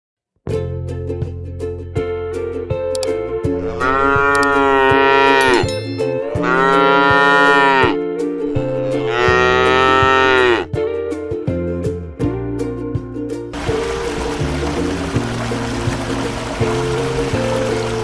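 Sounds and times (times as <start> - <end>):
background music: 0.5 - 18.0
cow mooing: 9.1 - 10.7.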